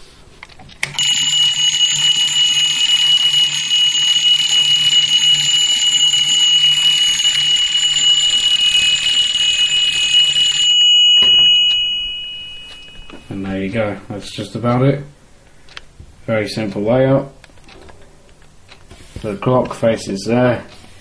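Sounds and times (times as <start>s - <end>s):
alarm clock bells ringing: 1.0s - 13.4s.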